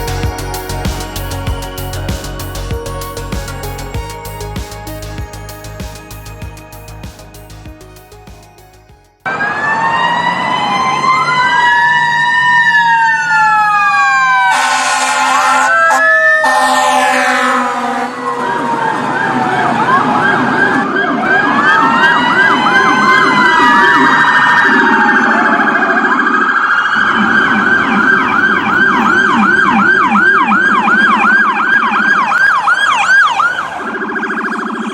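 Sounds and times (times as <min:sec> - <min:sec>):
wailing electronic sirens: 0:09.2 - 0:34.9
fast yelp siren: 0:09.3 - 0:34.9.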